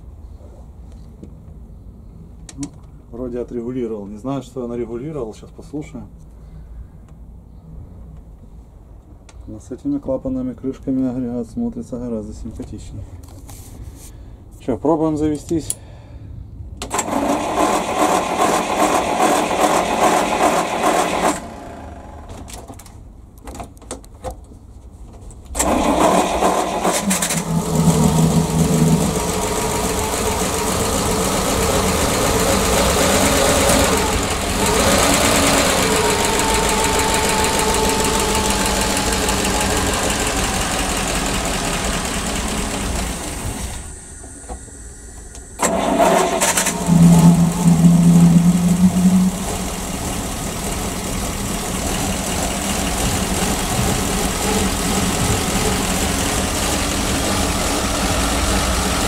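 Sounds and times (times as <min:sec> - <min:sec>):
engine cranking on starter: 0:16.8 - 0:22.9, 0:25.5 - 0:44.0, 0:45.4 - 0:59.0
engine running steadily: 0:25.6 - 0:59.0.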